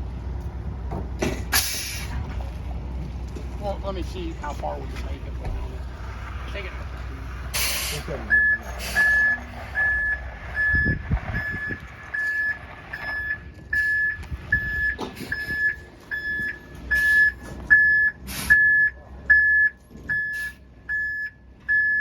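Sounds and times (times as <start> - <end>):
diesel engine running: 0.0 - 22.0
truck reversing alarm beeping: 7.6 - 22.0.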